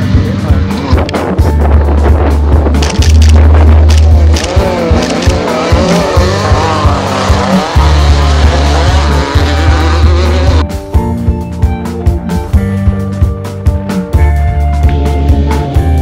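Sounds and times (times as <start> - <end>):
race vehicle engines revving: 0.0 - 10.6
background music with bass line: 0.0 - 16.0.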